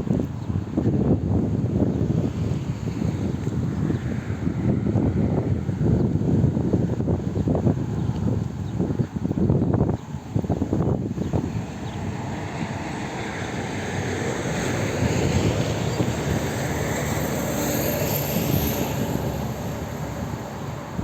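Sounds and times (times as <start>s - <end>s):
wind buffeting microphone: 0.0s - 21.0s
vehicle passing by: 2.2s - 6.2s, 11.3s - 21.0s.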